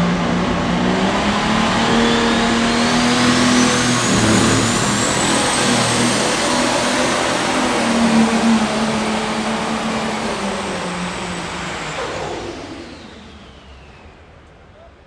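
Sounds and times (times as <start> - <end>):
loud vehicle engine running: 0.0 - 11.5.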